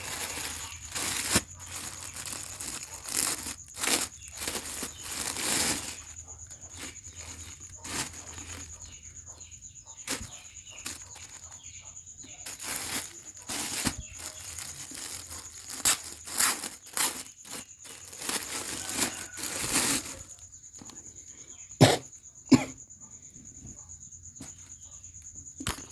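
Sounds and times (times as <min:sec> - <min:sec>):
packaging rustling and crinkling: 0:00.0 - 0:09.0, 0:10.1 - 0:11.6, 0:12.2 - 0:20.5.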